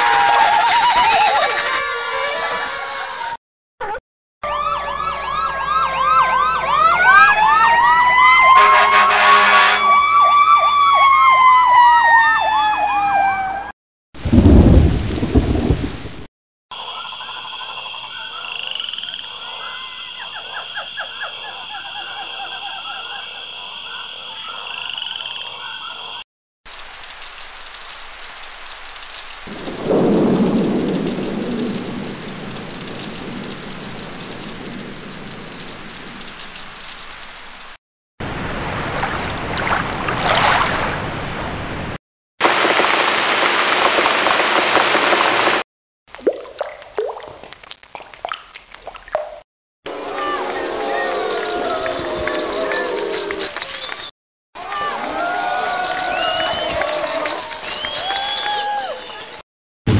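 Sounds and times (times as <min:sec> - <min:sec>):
sirens wailing: 0:04.4 - 0:13.7
rumble of thunder: 0:14.2 - 0:16.3, 0:29.5 - 0:36.5
thunder clap: 0:14.2 - 0:16.3, 0:29.5 - 0:36.5
frogs croaking: 0:16.7 - 0:26.2
steady rain: 0:26.7 - 0:39.5, 0:41.0 - 0:45.6.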